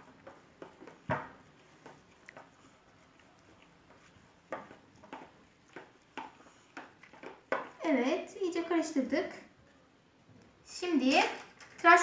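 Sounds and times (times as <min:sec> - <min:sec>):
utensil stirring slime mixture: 0:00.0 - 0:09.3.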